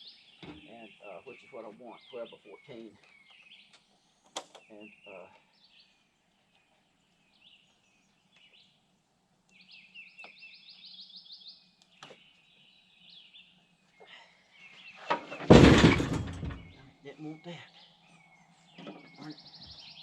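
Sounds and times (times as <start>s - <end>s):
birds chirping: 0.0s - 20.0s
loud thud with rattle: 15.1s - 16.8s.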